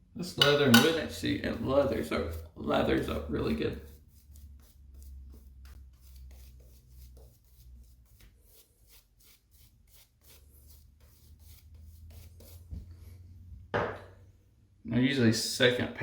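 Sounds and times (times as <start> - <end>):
razor scraping stubble: 0.5 - 12.7.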